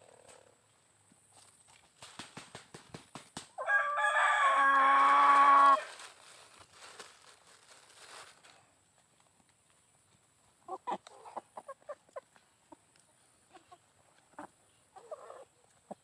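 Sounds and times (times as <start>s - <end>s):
rooster crowing: 3.6s - 5.9s.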